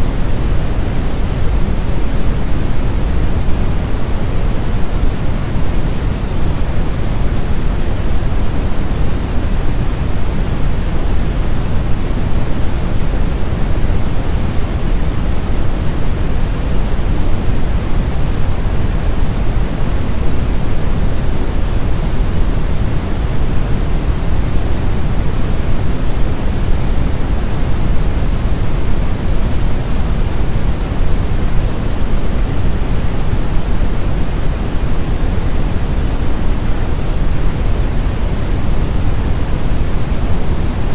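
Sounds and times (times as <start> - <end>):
deep rumbling brown noise: 0.0 - 40.9.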